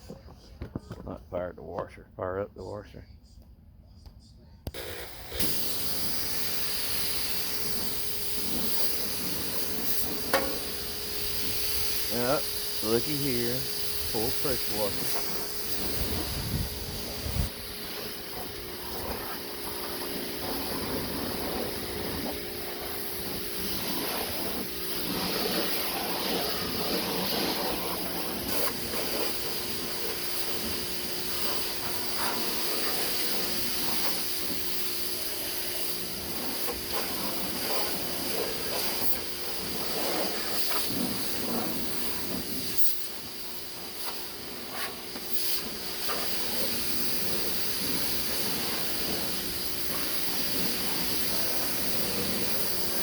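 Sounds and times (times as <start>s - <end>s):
pressure washer jet hissing: 4.7s - 53.0s.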